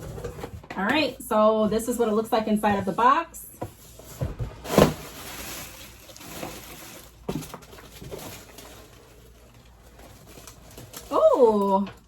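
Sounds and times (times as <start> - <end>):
packaging rustling and knocking: 3.6 - 11.1.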